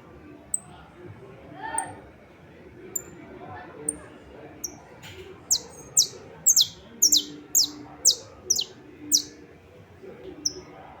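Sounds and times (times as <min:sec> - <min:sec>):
finch singing: 0:05.5 - 0:09.4, 0:10.4 - 0:10.6.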